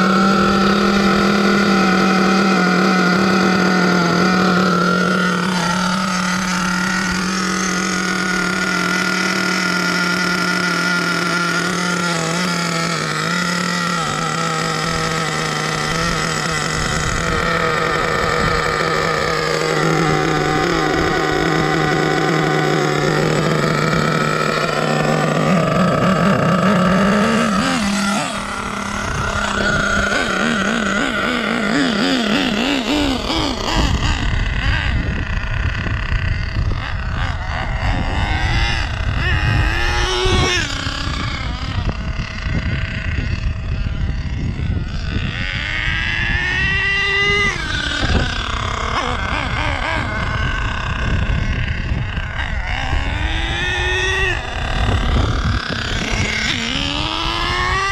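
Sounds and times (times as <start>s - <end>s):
small engine buzzing and revving: 0.0s - 57.9s.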